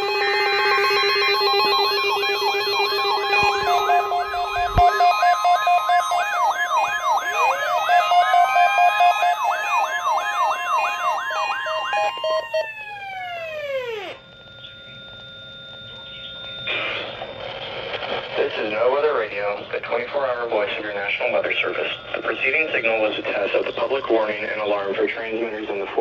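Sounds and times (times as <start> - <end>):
sirens wailing: 0.0 - 17.5, 18.4 - 26.0
siren winding up: 0.0 - 18.4.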